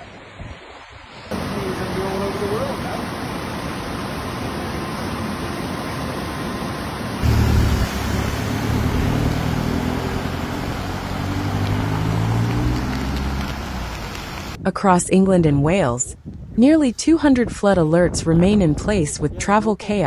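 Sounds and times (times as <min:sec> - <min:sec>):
floodwater rushing: 0:00.0 - 0:14.6
vehicle engine hum: 0:01.3 - 0:14.6.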